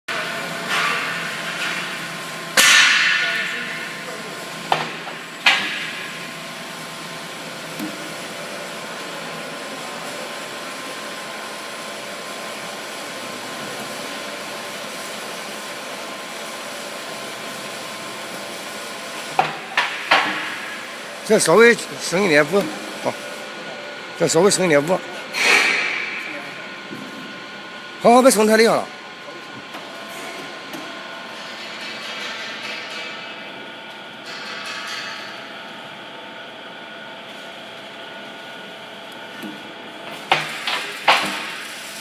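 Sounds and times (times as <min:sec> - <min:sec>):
workshop machinery hum: 0:00.0 - 0:42.0
metal striking metal: 0:02.6 - 0:04.0.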